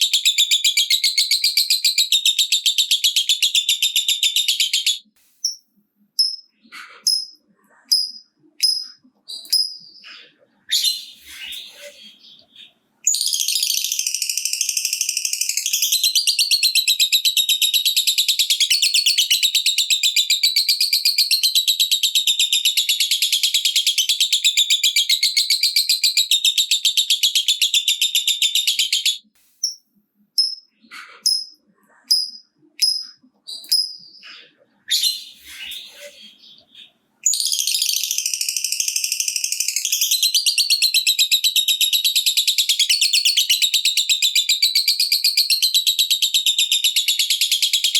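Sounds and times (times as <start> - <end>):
bird's short chirps: 5.4 - 12.8.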